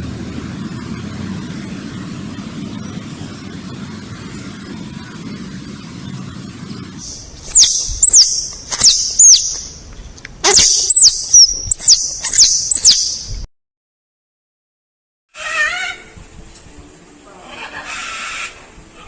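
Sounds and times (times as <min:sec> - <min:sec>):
low rushing noise: 0:00.0 - 0:13.5
high-pitched animal squeaks: 0:07.5 - 0:09.6, 0:10.4 - 0:13.2.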